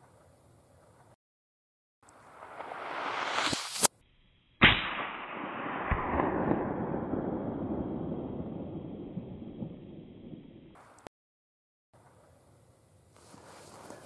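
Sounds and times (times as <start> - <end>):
rising whoosh: 2.2 - 3.9
rifle shot with rumble: 4.6 - 10.8.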